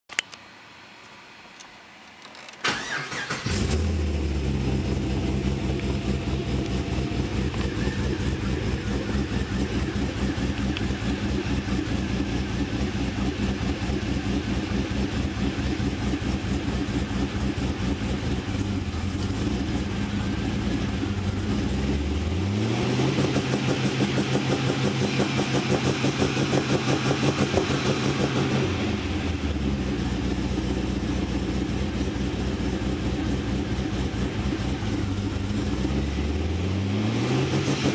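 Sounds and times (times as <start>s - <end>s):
car engine idling: 2.6s - 36.9s
engine revving with rapid stutter: 2.7s - 37.9s.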